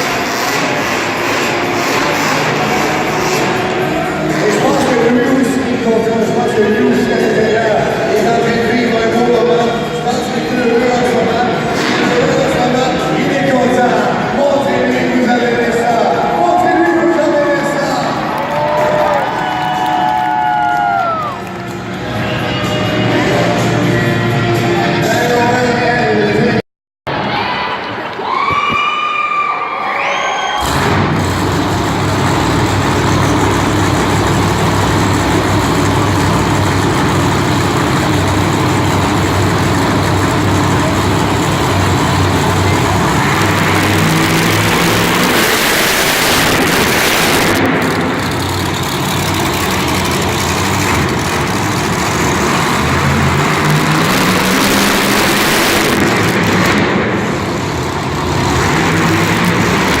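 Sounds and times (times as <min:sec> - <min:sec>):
truck engine revving: 0:00.0 - 0:16.2, 0:30.6 - 1:00.0.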